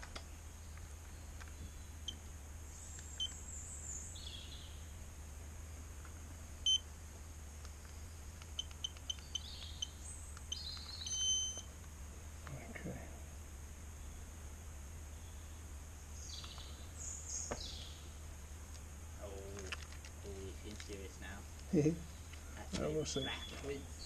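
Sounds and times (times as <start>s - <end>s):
faint chirps: 0.0s - 5.0s, 6.6s - 6.9s, 7.6s - 11.8s, 12.4s - 18.3s, 19.2s - 24.0s
steady low hum: 0.0s - 24.0s
short electronic beeps: 6.6s - 6.8s, 8.6s - 11.7s.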